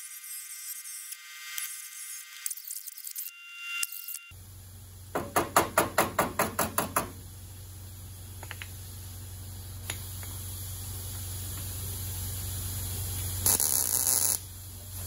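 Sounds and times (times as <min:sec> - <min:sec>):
steady low hum: 0:04.3 - 0:15.0.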